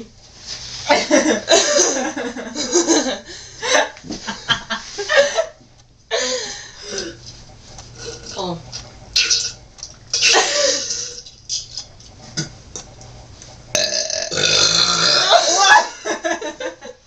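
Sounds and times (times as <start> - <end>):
girls laughing: 0.9 - 6.5, 10.2 - 10.9, 15.3 - 17.0.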